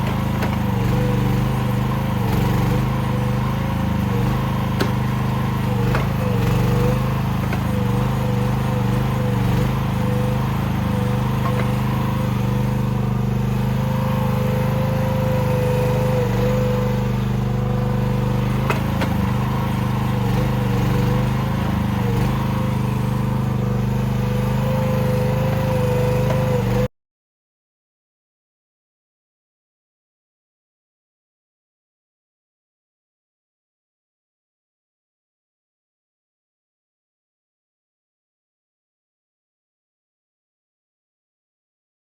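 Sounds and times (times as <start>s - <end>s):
excavator engine at full throttle: 0.0s - 26.9s.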